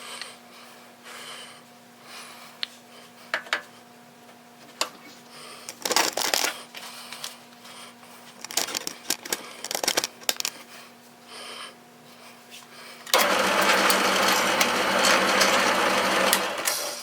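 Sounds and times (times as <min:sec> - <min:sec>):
power tool motor running: 0:13.1 - 0:17.0.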